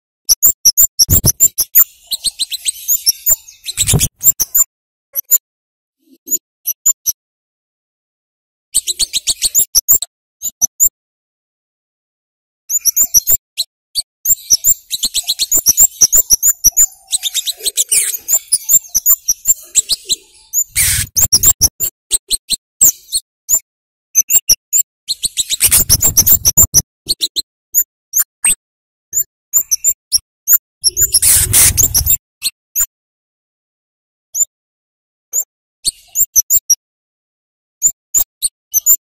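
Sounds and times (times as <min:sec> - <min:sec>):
bird high sharp chirps: 0:00.3 - 0:05.4, 0:08.8 - 0:10.9, 0:12.7 - 0:23.6, 0:24.2 - 0:28.3, 0:29.2 - 0:32.2, 0:35.4 - 0:36.8.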